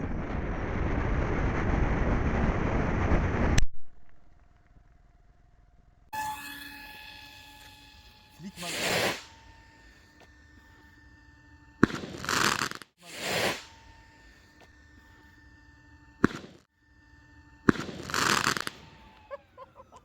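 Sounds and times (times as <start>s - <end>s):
rocket motor crack and hiss: 7.2s - 20.0s.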